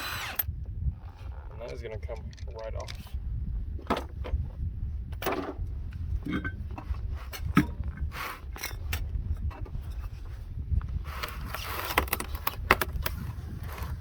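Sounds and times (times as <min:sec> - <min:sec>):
low steady rumble: 0:00.0 - 0:14.0
metal tools clinking and scraping: 0:06.2 - 0:06.6.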